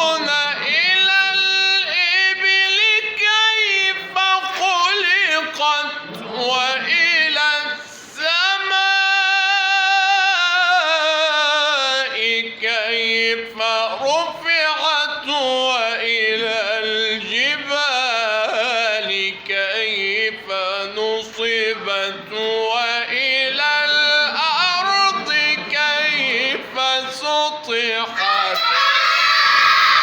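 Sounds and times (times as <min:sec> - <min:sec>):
man reciting melodically: 0:00.0 - 0:28.2
children cheering and shouting: 0:28.1 - 0:30.0.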